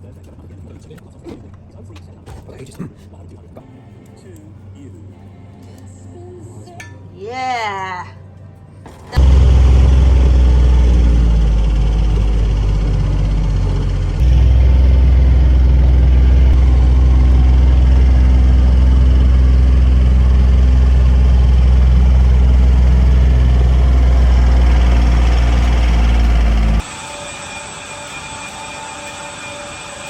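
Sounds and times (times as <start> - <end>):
motor humming: 9.1 - 30.0.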